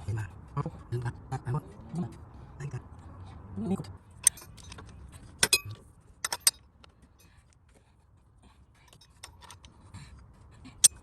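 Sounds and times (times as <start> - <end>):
metal tools clinking: 4.2 - 6.6, 8.9 - 9.8.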